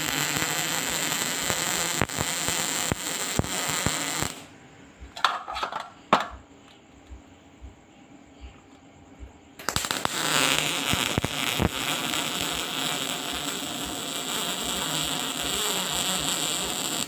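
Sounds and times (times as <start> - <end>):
welding arc crackling: 0.0 - 4.5, 9.6 - 17.0.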